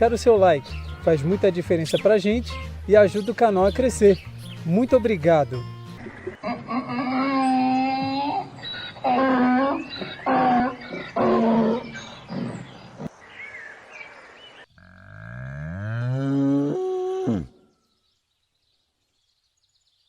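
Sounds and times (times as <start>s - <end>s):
animal calls: 6.0s - 13.1s
long rising animal call: 6.4s - 13.1s, 14.8s - 17.6s.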